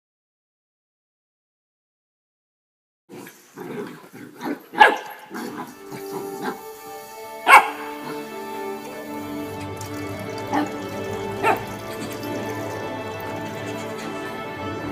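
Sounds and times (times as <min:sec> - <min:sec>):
dog barking: 0:04.4 - 0:05.7, 0:07.4 - 0:08.2, 0:11.4 - 0:11.7
background music: 0:04.8 - 0:14.9.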